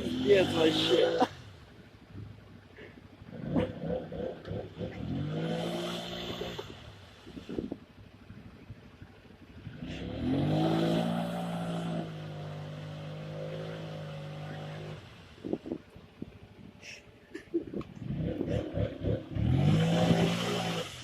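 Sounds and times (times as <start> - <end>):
quad engine revving: 0.0 - 1.3, 3.3 - 6.8, 9.6 - 15.1, 17.9 - 21.0.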